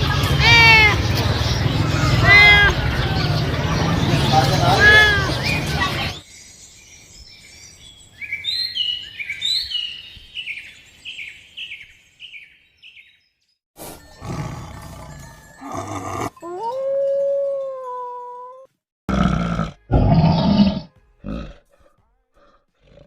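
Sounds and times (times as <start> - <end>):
cat meowing: 0.3 - 1.0, 2.2 - 2.8, 4.6 - 5.4.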